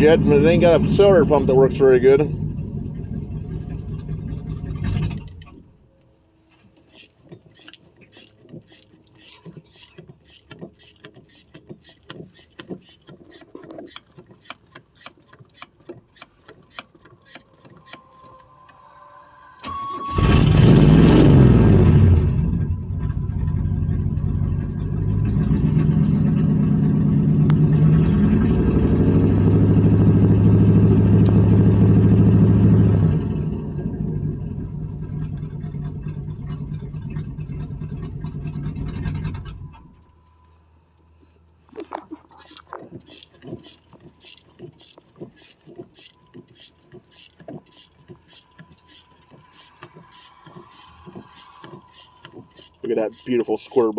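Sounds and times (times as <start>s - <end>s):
car engine running and stalling: 0.0s - 5.7s, 19.6s - 40.1s
accelerator pedal creaks and clicks: 9.3s - 20.4s.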